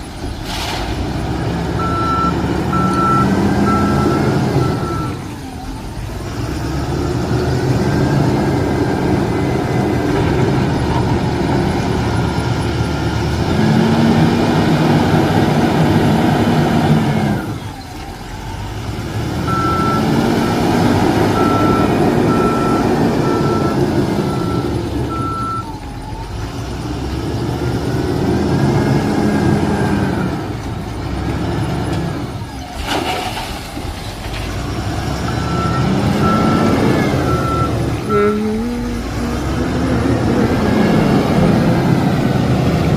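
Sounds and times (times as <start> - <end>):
diesel engine revving: 0.0 - 42.9
reversing alarm beeping: 1.8 - 5.8, 19.4 - 26.2, 35.2 - 38.4.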